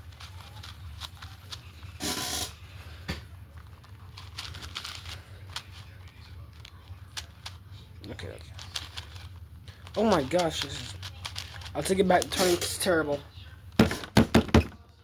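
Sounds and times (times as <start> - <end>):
puzzle cube plastic clicks: 0.0 - 2.5, 3.6 - 12.8.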